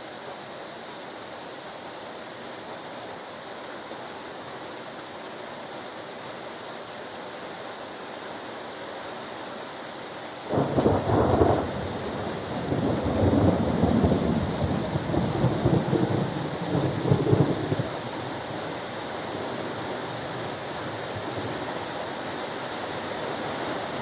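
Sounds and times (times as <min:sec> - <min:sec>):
rain hiss: 0:00.0 - 0:24.0
thunder clap and rumble: 0:10.5 - 0:18.0.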